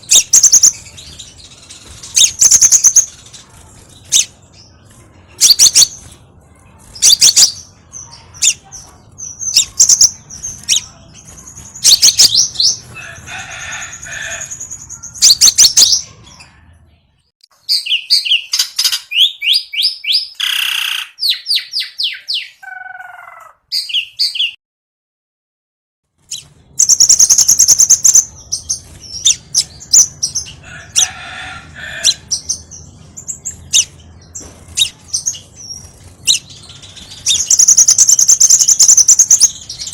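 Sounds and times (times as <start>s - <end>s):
bird chirps and whistled trills: 0.0s - 6.2s, 6.9s - 12.9s, 13.7s - 16.5s, 17.6s - 22.7s, 26.3s - 30.6s, 32.0s - 39.9s.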